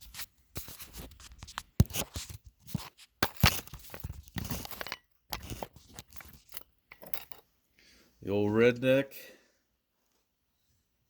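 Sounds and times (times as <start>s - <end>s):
metal tools clicking and scraping: 3.2s - 7.5s.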